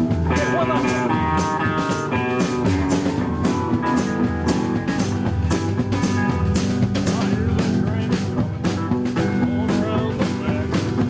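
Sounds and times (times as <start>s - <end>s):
drum kit beat: 0.0s - 11.0s
guitar: 0.0s - 11.0s.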